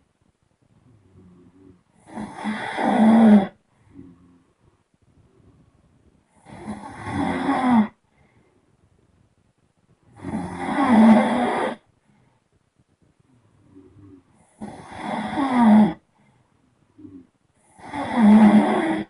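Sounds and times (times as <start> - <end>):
person snoring loudly: 1.0 - 4.4, 6.4 - 8.0, 10.1 - 11.8, 13.8 - 16.0, 17.0 - 19.0.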